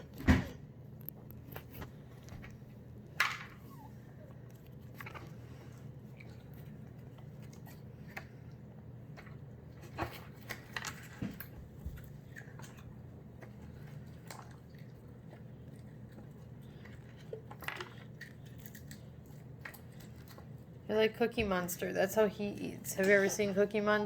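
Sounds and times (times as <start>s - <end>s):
low steady hum: 0.0s - 24.0s
child crunching crackers: 4.1s - 20.8s.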